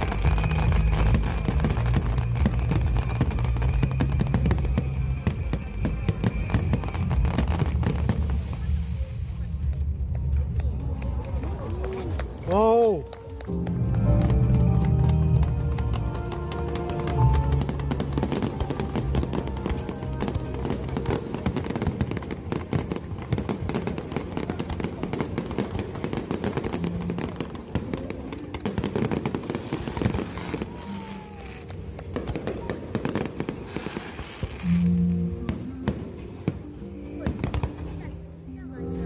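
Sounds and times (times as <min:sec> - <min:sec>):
fireworks crackling and popping: 0:00.0 - 0:39.0
music playing: 0:12.5 - 0:39.0.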